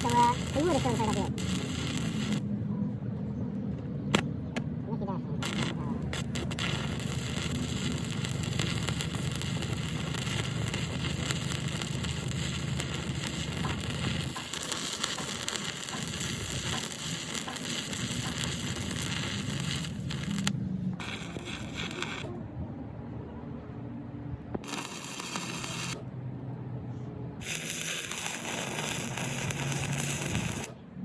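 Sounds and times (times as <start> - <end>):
arc welding crackling: 0.0 - 2.4, 5.4 - 22.4, 24.6 - 26.0, 27.4 - 30.8.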